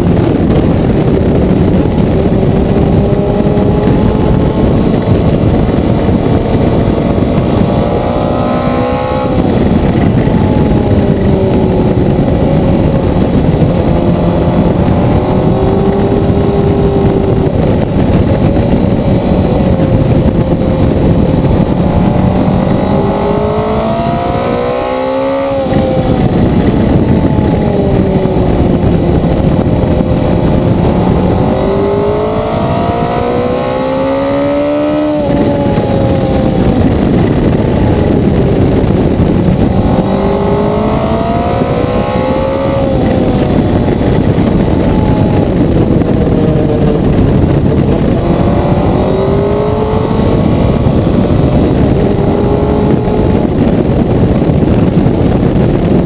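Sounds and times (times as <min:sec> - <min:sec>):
motorcycle engine revving: 0:00.0 - 0:56.0
wind noise: 0:00.0 - 0:56.0.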